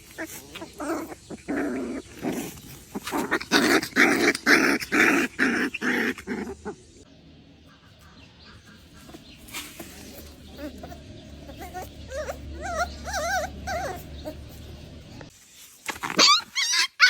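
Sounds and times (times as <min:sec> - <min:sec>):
puppy growling and yipping: 0:00.0 - 0:06.9, 0:10.4 - 0:15.0, 0:16.0 - 0:17.0.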